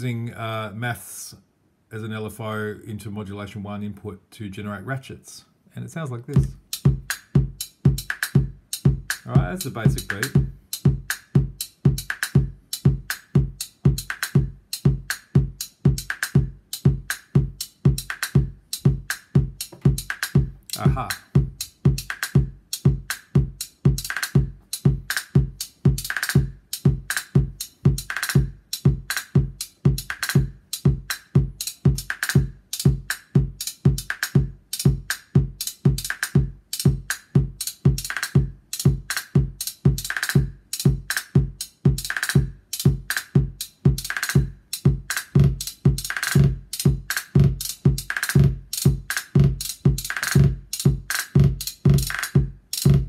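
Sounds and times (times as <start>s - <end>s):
low kick thumps: 6.4s - 32.0s
ratcheted repeat hits: 6.4s - 53.0s.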